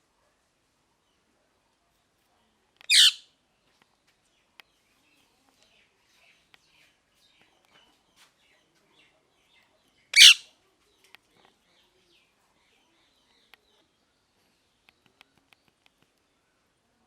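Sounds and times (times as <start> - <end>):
soft bird chirps and clicks: 2.7 - 12.3, 13.1 - 16.4
parakeet harsh screech: 2.9 - 3.2, 10.2 - 10.4.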